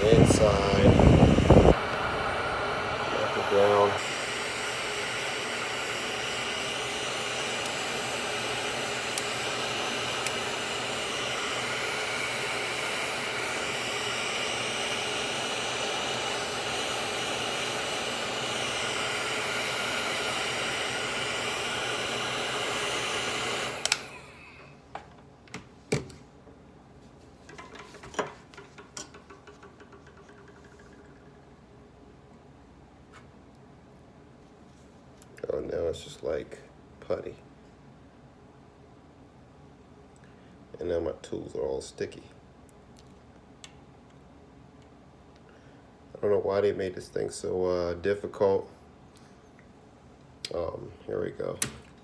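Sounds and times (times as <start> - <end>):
heat gun fan whining: 0.0 - 26.2, 27.5 - 31.7, 50.3 - 52.0
tools clicking and tapping: 27.5 - 31.2.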